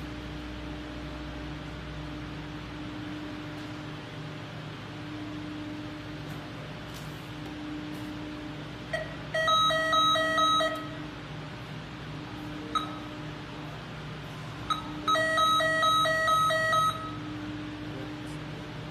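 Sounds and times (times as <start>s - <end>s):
low electrical hum: 0.0s - 18.9s
fire alarm beeping: 8.8s - 11.1s, 12.6s - 13.4s, 14.6s - 17.8s.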